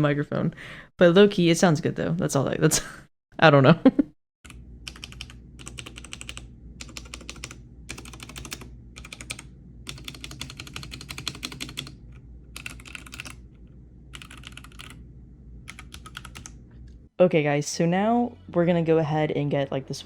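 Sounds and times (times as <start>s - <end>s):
mechanical keyboard typing: 4.5s - 13.4s, 14.1s - 15.0s, 15.7s - 16.6s
faint low hum: 4.5s - 20.0s.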